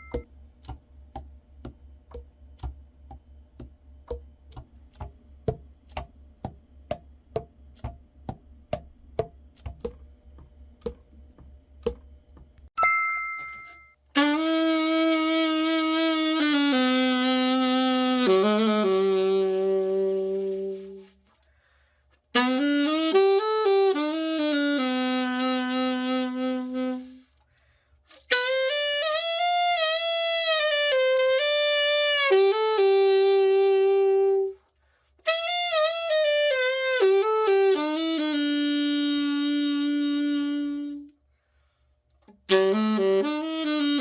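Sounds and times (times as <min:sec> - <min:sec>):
solo alto saxophone: 0:14.1 - 0:21.3, 0:22.3 - 0:44.0.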